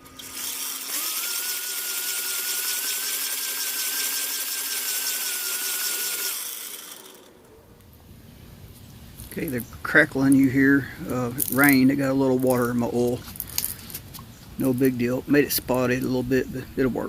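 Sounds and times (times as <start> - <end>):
blower motor whining: 0.0 - 8.0.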